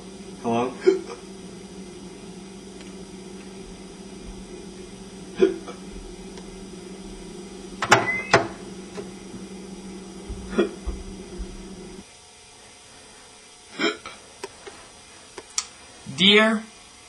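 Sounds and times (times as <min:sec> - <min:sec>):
steady low hum: 0:00.0 - 0:16.2
boy hiccupping: 0:10.4 - 0:11.0.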